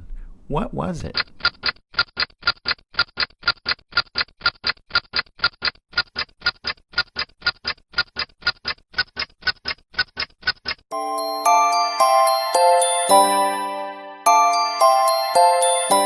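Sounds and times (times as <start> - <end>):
rapid clock-like ticking: 1.0 - 10.9.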